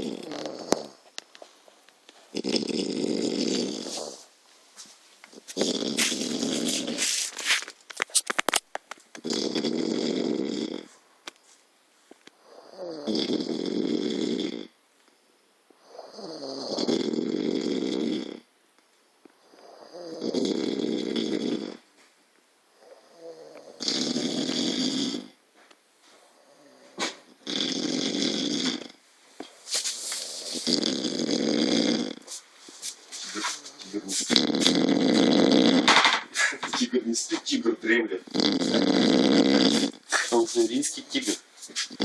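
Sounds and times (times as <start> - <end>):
person snoring: 0.0 - 1.0, 2.3 - 4.2, 5.5 - 7.4, 9.2 - 11.0, 12.4 - 14.7, 15.9 - 18.5, 19.6 - 21.8, 22.8 - 25.4, 26.4 - 29.0, 29.9 - 32.4, 33.2 - 42.0.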